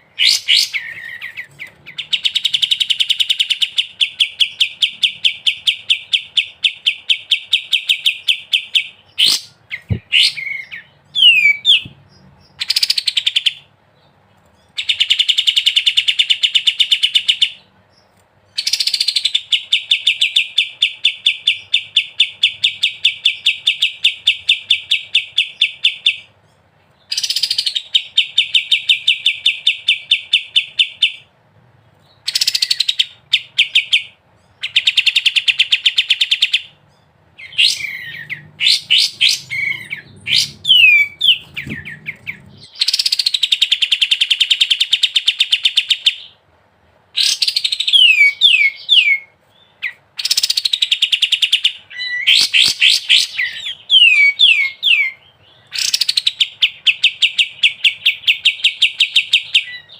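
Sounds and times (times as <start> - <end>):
bird gliding whistles: 37.4 - 43.6.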